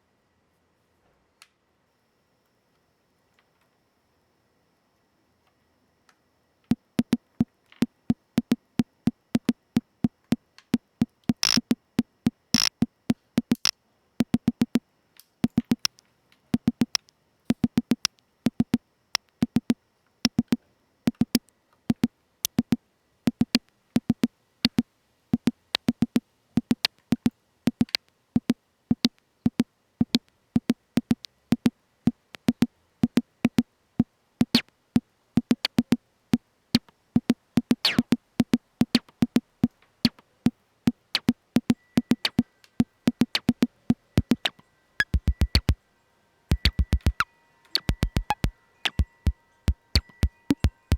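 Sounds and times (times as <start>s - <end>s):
synthesizer percussive blips: 6.7s - 14.8s, 15.4s - 15.9s, 16.6s - 24.8s, 25.4s - 33.6s, 34.4s - 34.6s, 35.4s - 36.0s, 36.8s - 45.8s, 46.5s - 50.9s.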